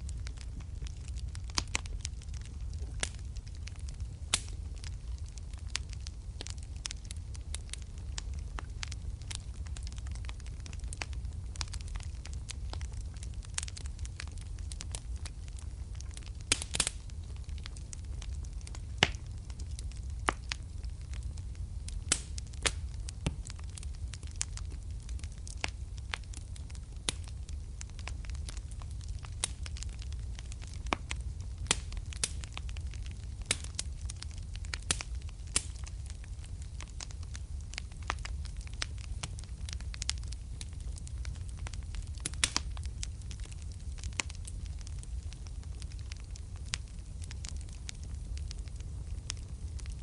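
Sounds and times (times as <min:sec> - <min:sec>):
fire popping and snapping: 0:00.0 - 0:50.0
wood fire crackling: 0:00.0 - 0:50.0.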